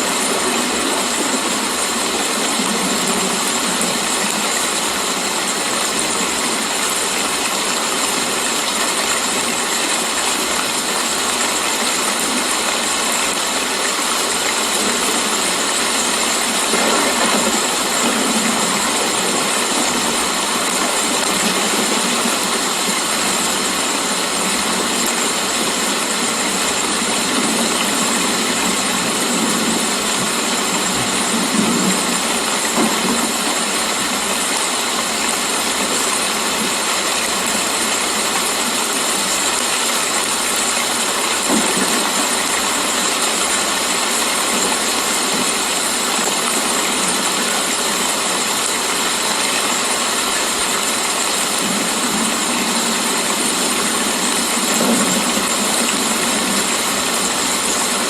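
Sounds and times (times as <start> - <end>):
heavy rain hissing: 0.0 - 58.0.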